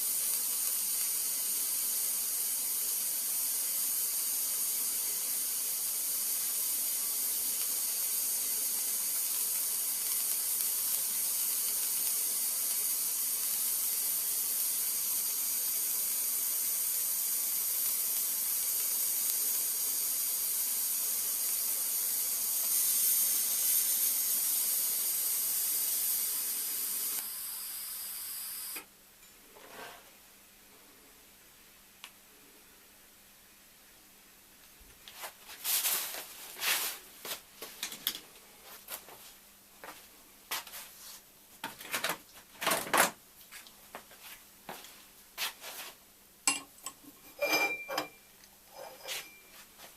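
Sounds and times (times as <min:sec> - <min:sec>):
welding arc hissing: 0:00.0 - 0:28.9.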